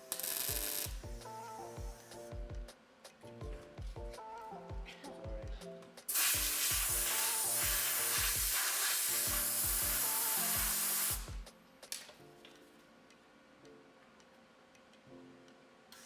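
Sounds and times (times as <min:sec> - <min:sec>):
welding arc crackling sizzle: 0:00.0 - 0:01.1, 0:06.1 - 0:12.0
background music with steady beat: 0:00.0 - 0:16.0.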